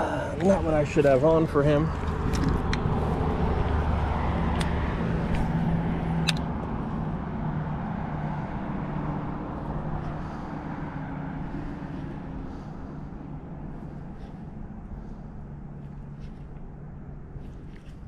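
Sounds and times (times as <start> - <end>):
vehicle engine hum: 0.0 - 18.0
sharp clicks: 6.2 - 6.5.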